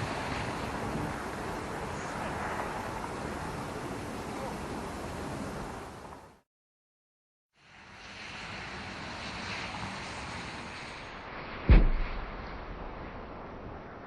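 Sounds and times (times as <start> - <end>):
tyre and wind noise: 0.0 - 6.4.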